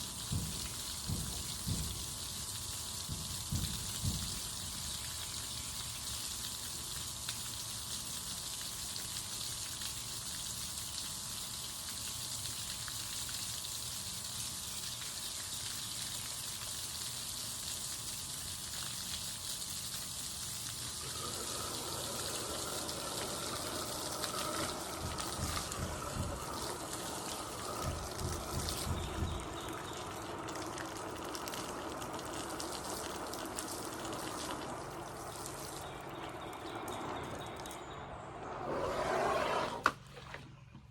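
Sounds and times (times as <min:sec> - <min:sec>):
gushing water: 0:00.0 - 0:38.6
faint steady hum: 0:00.0 - 0:40.9
low thumps: 0:24.4 - 0:29.9.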